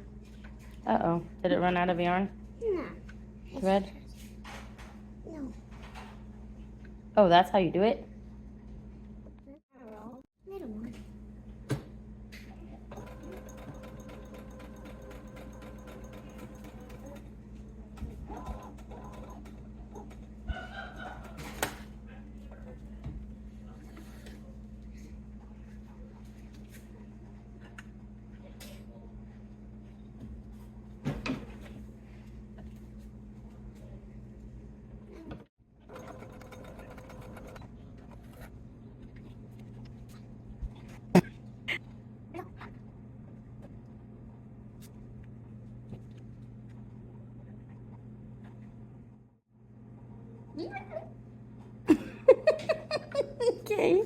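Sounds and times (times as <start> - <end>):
sewing machine stitching: 12.9 - 17.4, 18.0 - 21.9, 35.9 - 38.5.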